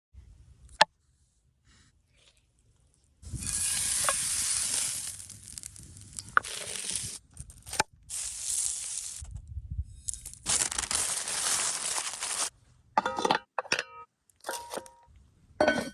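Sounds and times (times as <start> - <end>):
food sizzling in hot oil: 3.3 - 7.2, 8.1 - 9.3.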